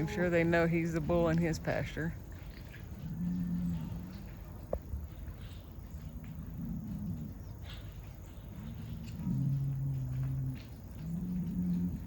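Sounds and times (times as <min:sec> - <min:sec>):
bull bellowing: 0:00.0 - 0:00.8.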